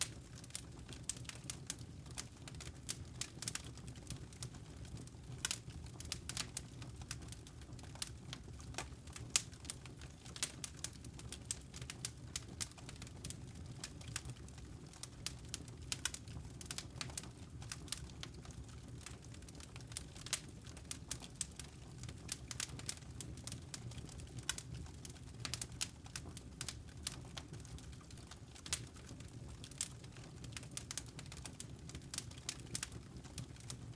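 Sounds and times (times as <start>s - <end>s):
fire crackling: 0.0s - 33.9s
low rumble of flames: 0.0s - 33.9s.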